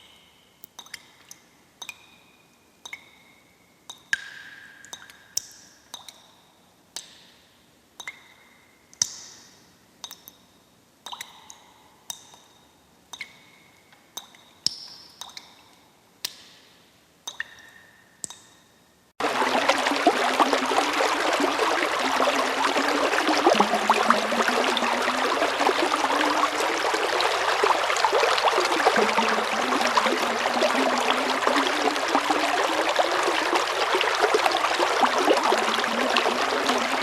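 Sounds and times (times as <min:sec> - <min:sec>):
water drops plinking: 0:00.0 - 0:06.3, 0:11.1 - 0:12.5, 0:14.2 - 0:15.6, 0:17.3 - 0:18.5, 0:19.2 - 0:37.0.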